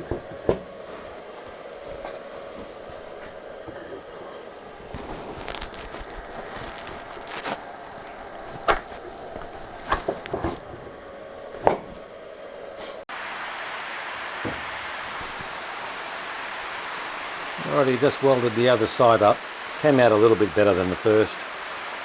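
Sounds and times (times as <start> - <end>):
steady hum: 0.0 - 22.0.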